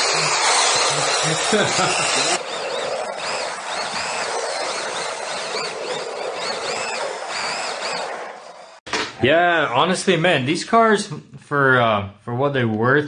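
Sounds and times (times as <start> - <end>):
electric motors whining: 0.0 - 8.8.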